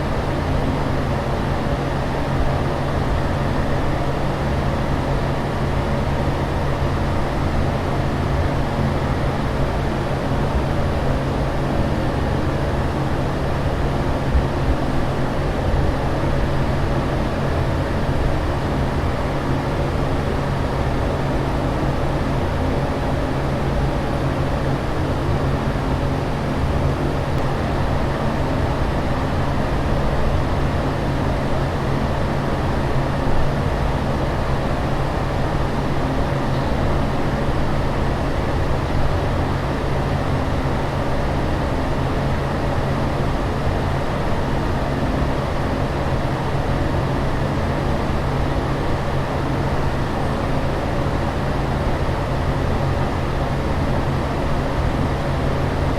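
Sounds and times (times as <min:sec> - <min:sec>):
aircraft cabin drone: 0:11.0 - 0:41.9.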